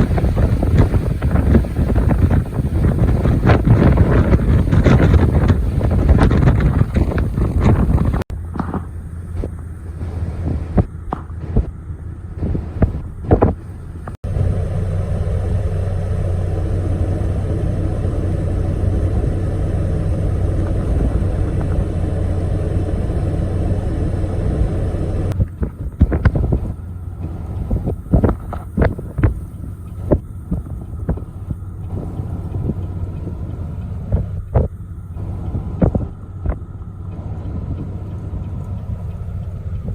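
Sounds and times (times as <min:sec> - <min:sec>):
steady low rumble: 0:00.0 - 0:39.9
wind buffeting microphone: 0:00.0 - 0:39.9.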